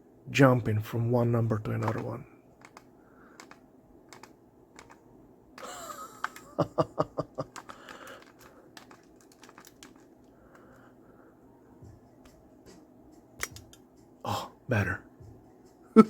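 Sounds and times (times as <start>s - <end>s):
calculator keys clicking: 1.8s - 2.0s, 2.6s - 5.0s, 6.2s - 6.7s, 7.3s - 10.8s.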